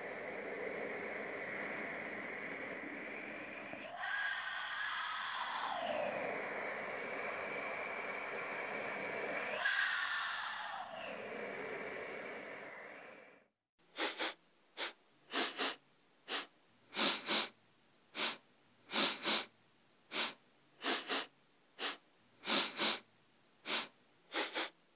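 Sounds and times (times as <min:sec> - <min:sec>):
person sniffing: 0:13.9 - 0:24.8.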